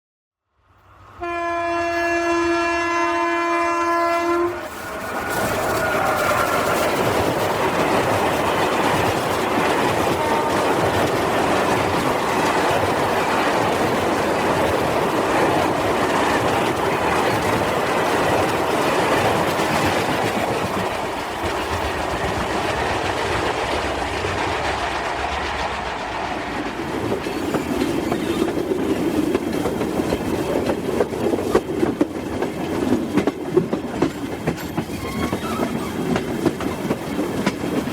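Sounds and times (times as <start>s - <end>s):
train horn blast: 1.2s - 5.2s, 10.1s - 11.0s
train wagons rumbling on rails: 1.8s - 37.9s
wheels clickety-clack: 4.6s - 37.9s.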